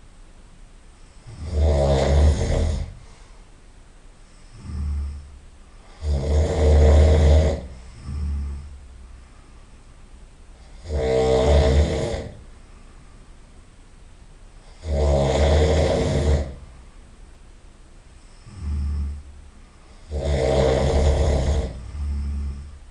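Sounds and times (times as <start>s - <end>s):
quiet breaths: 0.8s - 22.9s
person snoring loudly: 1.1s - 3.0s, 4.4s - 8.8s, 10.6s - 12.4s, 14.6s - 16.7s, 18.3s - 19.3s, 19.9s - 22.8s.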